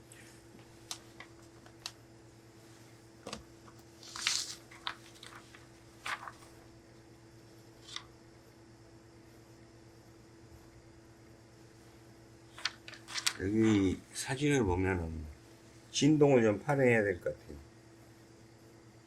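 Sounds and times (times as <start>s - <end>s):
steady low hum: 0.0s - 19.0s
cloth rustling: 4.0s - 6.6s.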